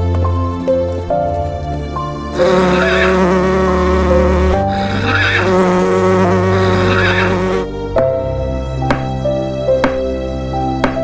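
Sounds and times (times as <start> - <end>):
background music: 0.0 - 11.0
horse whinnying: 2.3 - 7.7.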